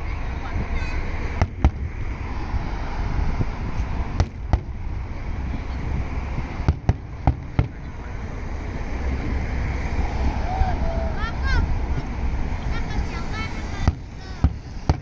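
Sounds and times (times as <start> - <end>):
steady background noise: 0.0 - 15.0
fireworks bangs: 3.4 - 8.1, 11.2 - 15.0.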